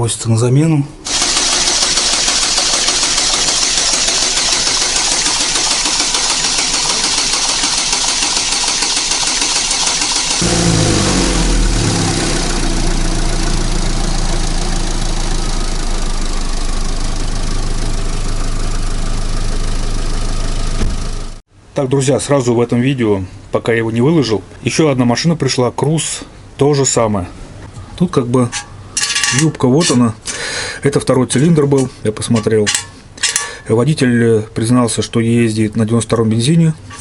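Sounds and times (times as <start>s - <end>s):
car engine starting and idling: 1.1s - 21.4s.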